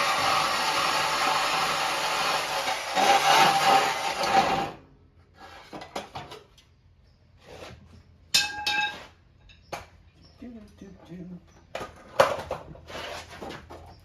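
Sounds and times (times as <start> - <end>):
ringing metal clank: 8.3 - 9.7.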